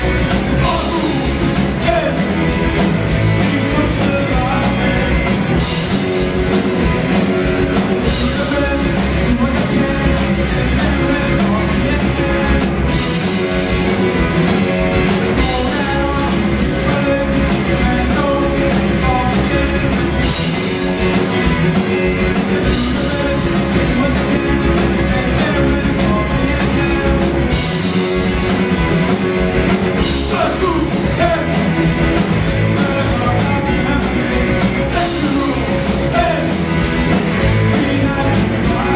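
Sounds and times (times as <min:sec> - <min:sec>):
person singing: 0:00.0 - 0:02.4, 0:03.4 - 0:05.4, 0:07.9 - 0:13.4, 0:15.3 - 0:20.1, 0:21.8 - 0:27.5, 0:30.2 - 0:31.7, 0:32.6 - 0:36.7, 0:37.4 - 0:38.9
live rock band playing: 0:00.0 - 0:38.9.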